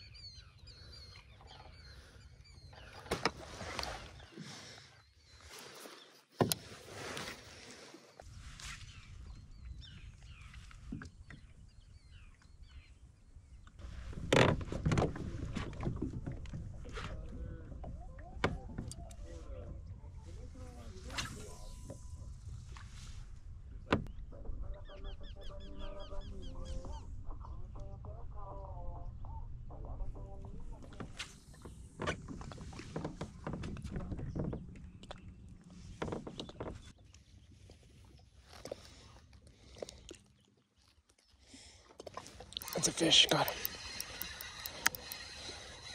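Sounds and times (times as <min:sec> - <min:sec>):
kayak paddle in water: 0:00.0 - 0:24.2, 0:26.0 - 0:45.9
kayak knocking and splashing: 0:02.7 - 0:04.2, 0:13.8 - 0:19.0, 0:30.6 - 0:37.0.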